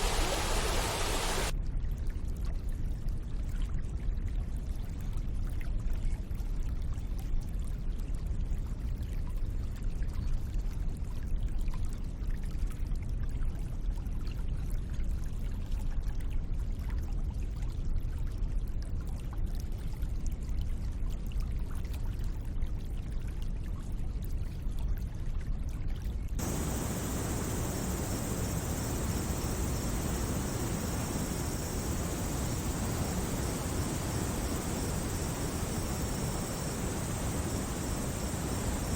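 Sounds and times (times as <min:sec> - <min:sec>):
bright even hiss: 0:00.0 - 0:01.5, 0:26.4 - 0:38.9
running water rushing: 0:00.0 - 0:01.5, 0:26.4 - 0:38.9.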